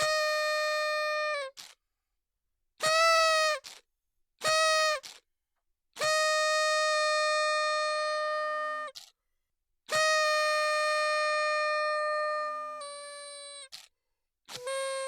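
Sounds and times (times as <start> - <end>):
party horn blasts: 0.0 - 1.8, 2.8 - 5.2, 6.0 - 9.2, 9.9 - 13.9, 14.5 - 15.0.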